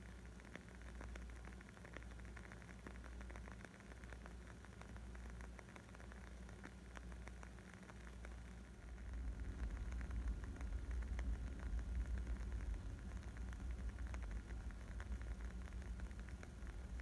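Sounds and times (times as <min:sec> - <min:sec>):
low rumble: 0:08.9 - 0:17.0.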